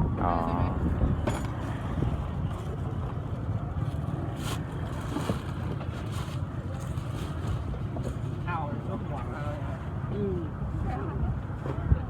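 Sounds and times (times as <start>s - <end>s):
wind buffeting microphone: 0.0s - 3.5s.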